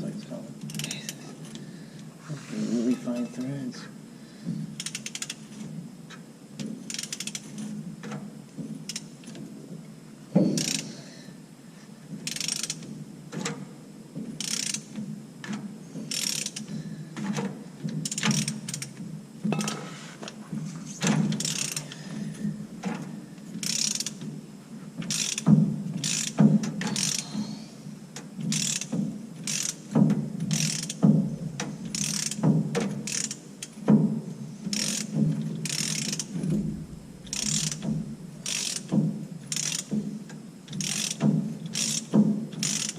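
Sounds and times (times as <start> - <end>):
hand ratchet clicking: 0.6 - 1.6, 4.8 - 5.6, 6.8 - 7.7, 8.8 - 9.4, 10.5 - 10.9, 12.2 - 13.6, 14.3 - 19.0, 21.0 - 22.5, 23.6 - 24.4, 25.0 - 27.4, 28.2 - 33.9, 34.6 - 42.9.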